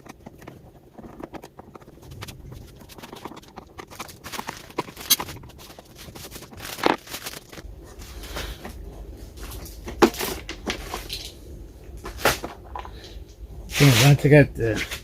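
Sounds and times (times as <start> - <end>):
screws and plastic housing knocking: 0.0 - 5.7.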